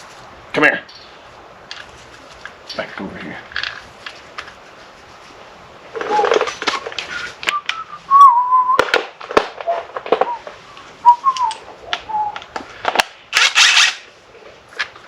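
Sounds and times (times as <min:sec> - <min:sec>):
rustling: 0:00.0 - 0:15.0
person whistling a tune: 0:06.7 - 0:08.8, 0:11.0 - 0:12.4.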